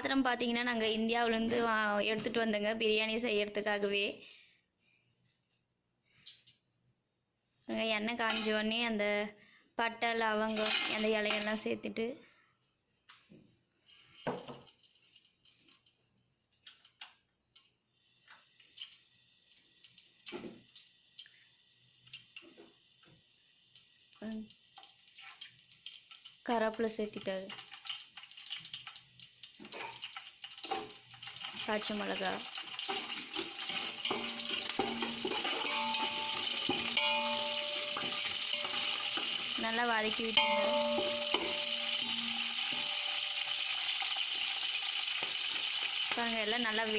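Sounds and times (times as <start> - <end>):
spices sizzling in hot oil: 7.7 - 9.0, 10.1 - 11.9, 13.9 - 46.9
ladle knocking against pot: 40.4 - 43.1.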